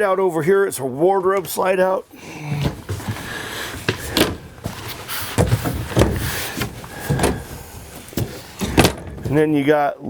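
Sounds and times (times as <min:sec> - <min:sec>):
rustling: 0:01.2 - 0:09.7
knocks and thumps: 0:02.5 - 0:09.6.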